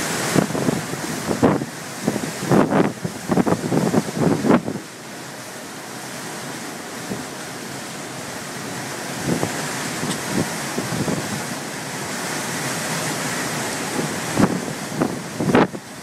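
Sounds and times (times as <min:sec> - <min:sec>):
strong wind rushing: 0:00.0 - 0:04.8, 0:09.2 - 0:11.5, 0:13.9 - 0:15.8
wind buffeting microphone: 0:00.2 - 0:04.9, 0:09.2 - 0:11.5, 0:13.9 - 0:15.9.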